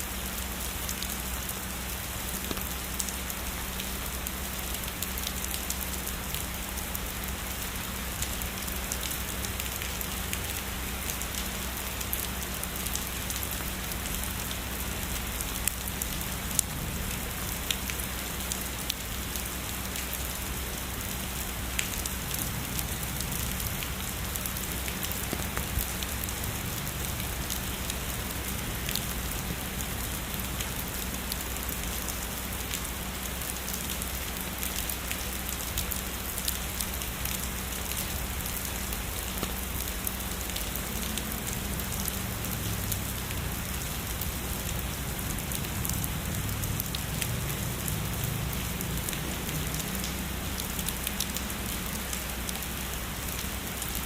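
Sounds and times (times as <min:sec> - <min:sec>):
heavy rain falling: 0:00.0 - 0:54.0
raindrops tapping: 0:02.3 - 0:03.4, 0:23.0 - 0:44.4.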